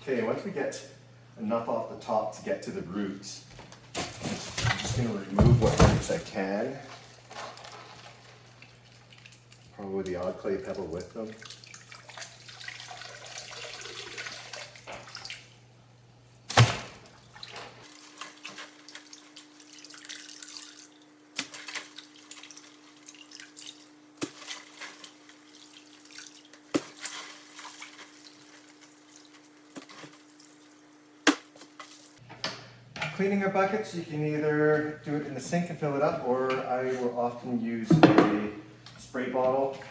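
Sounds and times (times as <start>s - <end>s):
water sloshing in a sink: 4.2s - 15.6s, 16.5s - 30.9s.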